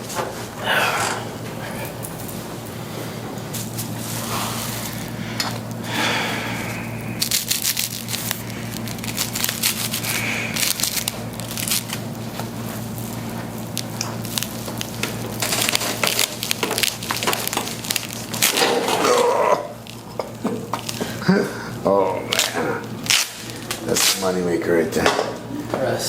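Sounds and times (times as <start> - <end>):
spine cracking: 3.6 - 24.4.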